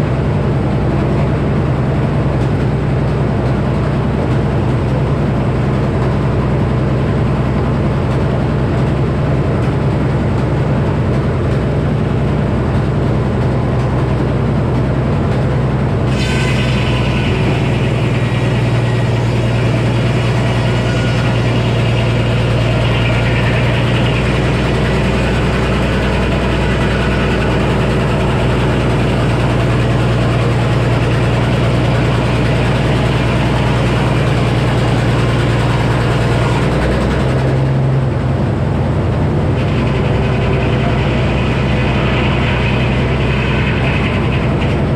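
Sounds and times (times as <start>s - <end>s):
sawmill engine running: 0.0s - 44.9s
circular saw cutting log: 16.0s - 38.1s, 39.4s - 44.9s.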